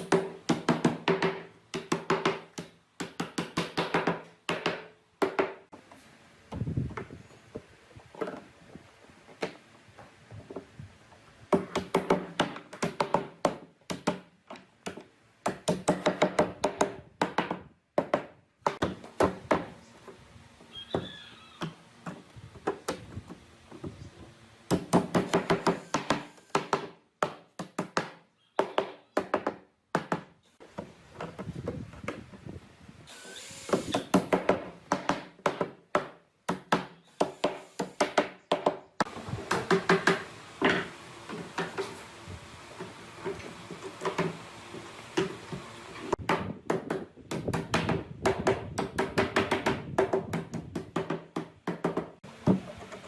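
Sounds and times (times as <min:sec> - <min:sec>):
tools knocking on wood: 0:39.5 - 0:41.9.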